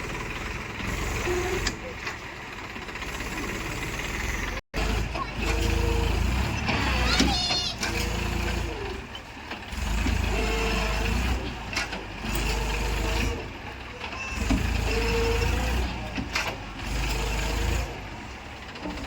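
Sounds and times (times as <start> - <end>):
diesel engine revving: 0.0 - 19.0.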